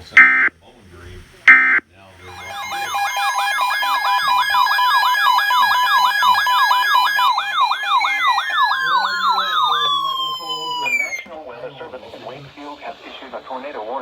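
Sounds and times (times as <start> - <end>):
steady tones: 0.0 - 0.5, 1.5 - 11.3
electronic siren sweeping: 1.5 - 11.3
falling tone gliding down: 2.3 - 11.3.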